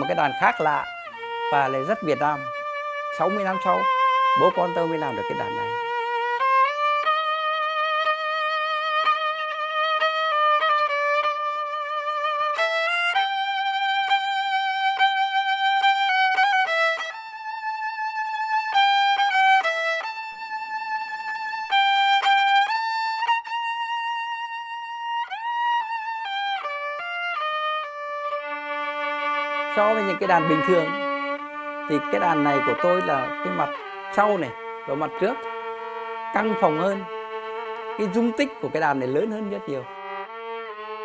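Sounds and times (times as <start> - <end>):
solo violin melody: 0.0 - 41.0.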